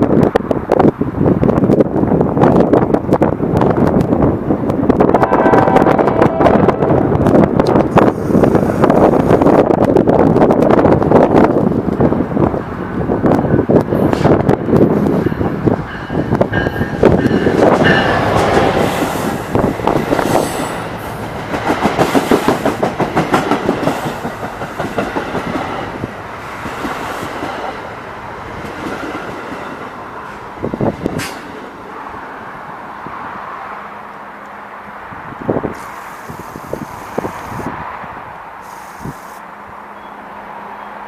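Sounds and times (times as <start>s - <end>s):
train wheels clacking on rails: 14.1s - 31.7s.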